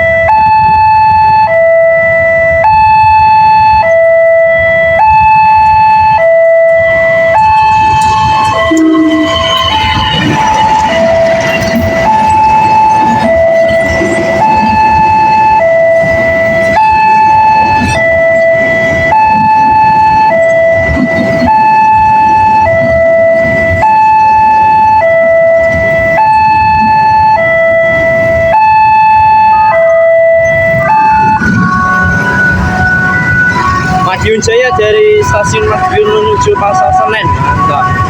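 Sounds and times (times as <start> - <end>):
two-tone level crossing siren: 0.0 - 38.0
low rumble: 6.9 - 24.5, 29.2 - 34.1.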